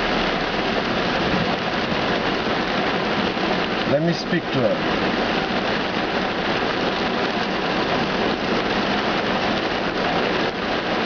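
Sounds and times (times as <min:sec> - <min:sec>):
heavy rain on car roof: 0:00.0 - 0:11.0.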